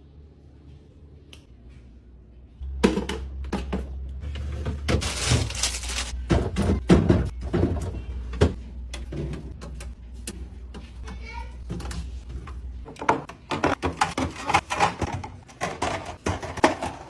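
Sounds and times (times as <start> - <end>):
groceries knocking and clunking: 2.6 - 17.0
rustling: 5.0 - 6.2.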